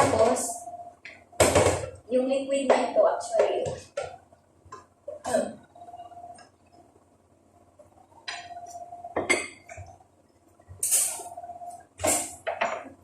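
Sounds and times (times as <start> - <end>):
utensils and dishes clinking: 10.8 - 11.4.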